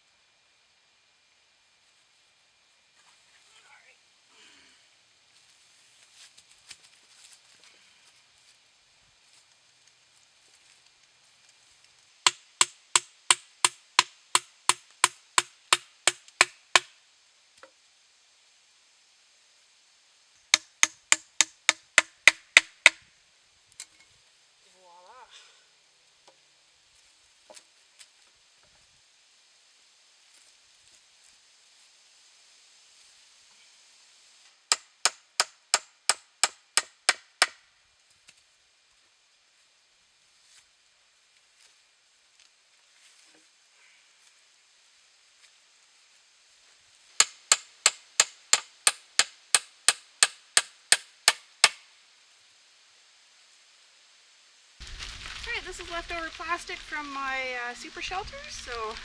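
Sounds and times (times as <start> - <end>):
hammer strikes: 12.3 - 16.9, 20.6 - 23.0, 34.7 - 37.6, 47.2 - 51.8
hand tool blows on wood: 20.6 - 23.0.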